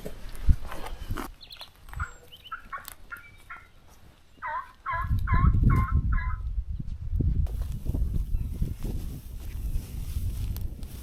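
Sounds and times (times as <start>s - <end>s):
turkey yelps: 2.0s - 3.8s, 4.4s - 6.4s.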